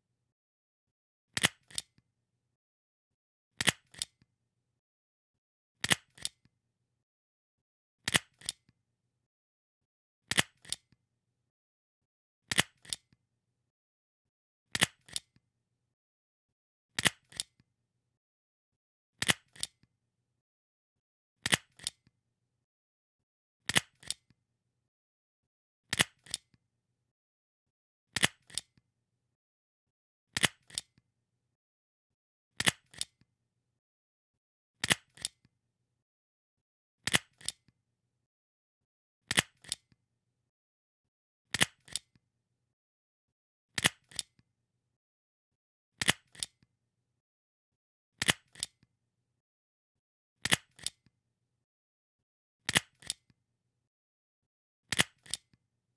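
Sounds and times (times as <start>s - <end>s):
stapler clicking: 37.1s - 37.6s, 41.6s - 42.0s, 46.0s - 46.5s, 48.2s - 48.7s, 50.4s - 51.0s, 52.7s - 53.2s, 54.9s - 55.5s.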